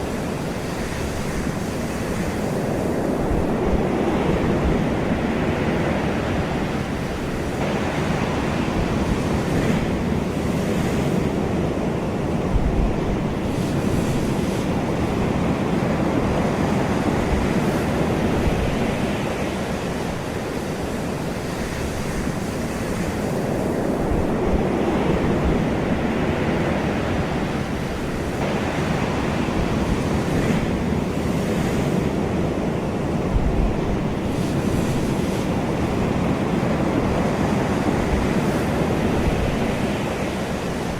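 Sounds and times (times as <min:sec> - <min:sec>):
ocean waves breaking: 0:00.0 - 0:40.9.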